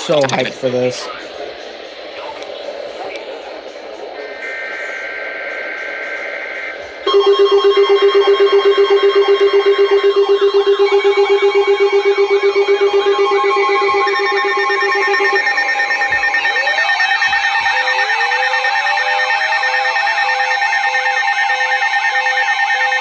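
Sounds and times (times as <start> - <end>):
fast warbling alarm: 0.0 - 23.0
steady alarm tones: 0.0 - 23.0
pulsing low beep: 4.3 - 23.0
slow on-off beep: 6.4 - 23.0.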